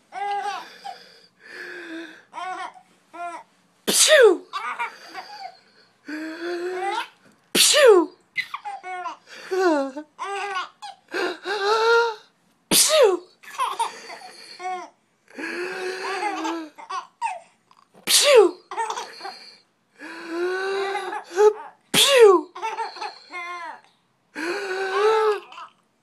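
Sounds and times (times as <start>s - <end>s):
baby sneezing: 3.9s - 4.9s, 6.9s - 8.8s, 12.7s - 13.8s, 18.0s - 19.3s, 21.0s - 23.2s
baby giggling and laughing: 15.8s - 17.4s, 22.3s - 23.7s.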